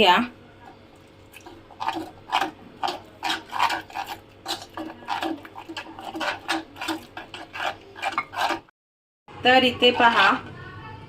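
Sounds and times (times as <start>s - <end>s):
batter stirred in a bowl: 0.5s - 8.7s.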